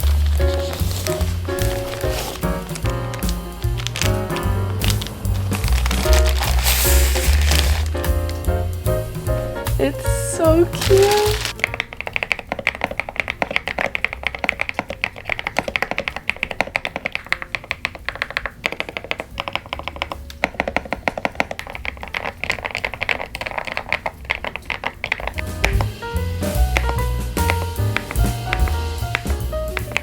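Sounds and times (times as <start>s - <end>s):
mechanical keyboard typing: 10.6s - 25.8s.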